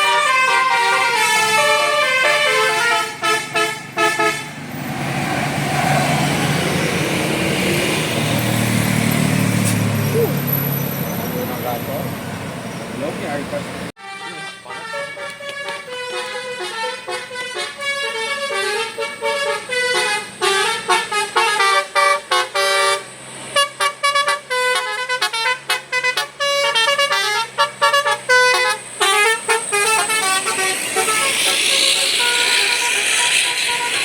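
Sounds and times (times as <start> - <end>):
musical bus horn tune: 0.0 - 4.8, 14.0 - 34.0.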